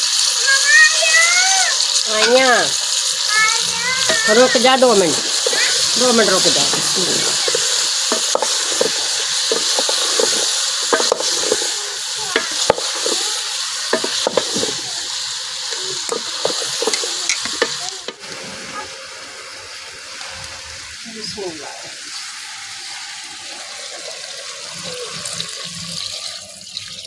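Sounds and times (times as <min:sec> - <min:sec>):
food sizzling in hot oil: 0:00.0 - 0:27.0
spoon scraping a pot: 0:05.3 - 0:11.7.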